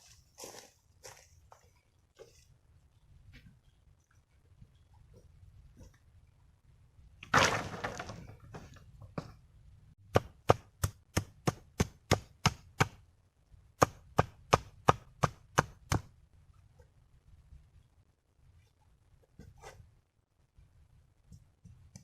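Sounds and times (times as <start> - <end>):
wood chopping strikes: 10.1 - 13.0.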